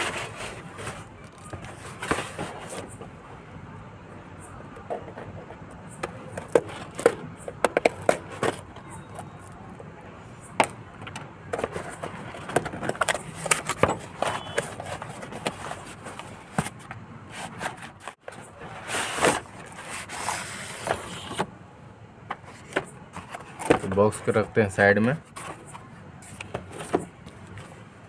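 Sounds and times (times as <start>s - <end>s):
packaging rustling: 0.0s - 3.2s, 6.1s - 9.6s, 11.5s - 21.5s, 22.4s - 27.8s
cardboard sliding scrape: 0.0s - 3.3s, 11.6s - 21.5s, 22.4s - 24.6s, 25.2s - 27.9s.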